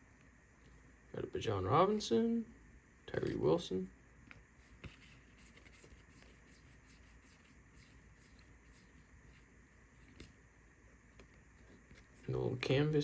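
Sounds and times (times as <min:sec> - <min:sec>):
trading cards being handled: 0:04.2 - 0:10.5, 0:11.1 - 0:13.0.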